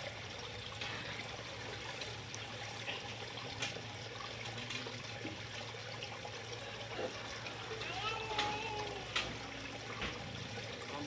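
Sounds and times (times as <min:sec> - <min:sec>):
trickle of running water: 0:00.0 - 0:11.0.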